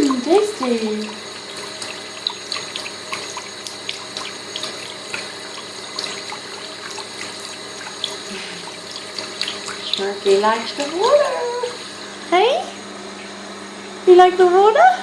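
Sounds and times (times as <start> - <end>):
cat drinking with small splashes: 0.0 - 11.8
tap running into a sink: 0.0 - 11.8.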